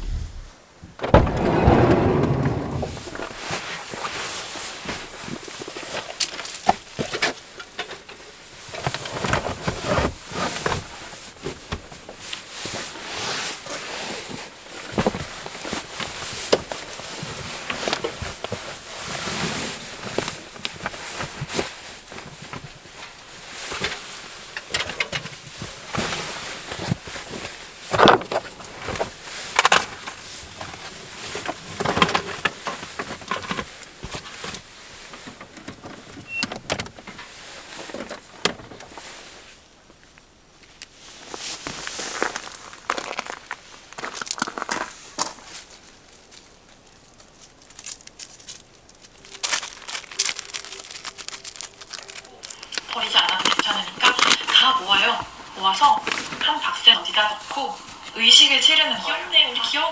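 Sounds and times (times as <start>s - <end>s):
objects being handled: 47.5s - 55.5s.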